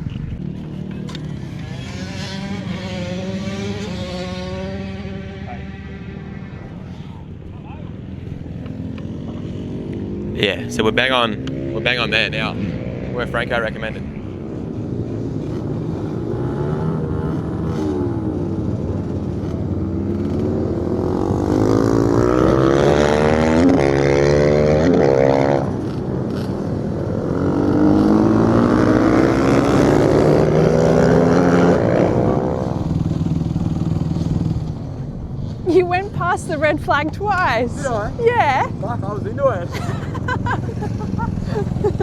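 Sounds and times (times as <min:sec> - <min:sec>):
motorcycle engine accelerating: 0:00.0 - 0:42.0.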